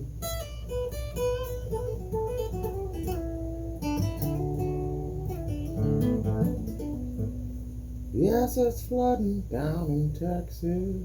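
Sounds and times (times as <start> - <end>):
blues guitar lick: 0.0 - 8.6.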